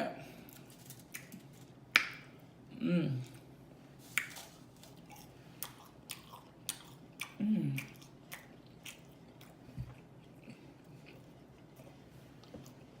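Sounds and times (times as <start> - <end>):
low vocal sound: 2.7 - 3.4
open-mouth chewing: 5.0 - 13.0.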